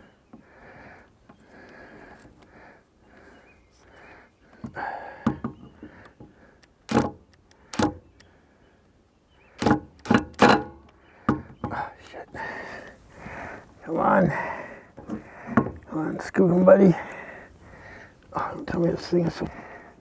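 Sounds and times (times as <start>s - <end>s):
metal clanks and knocks: 9.6s - 11.8s.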